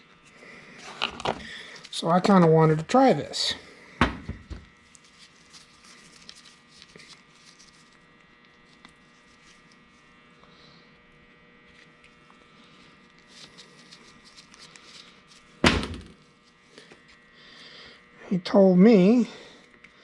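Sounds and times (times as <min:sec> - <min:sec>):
faint electrical hum: 0:00.0 - 0:20.0.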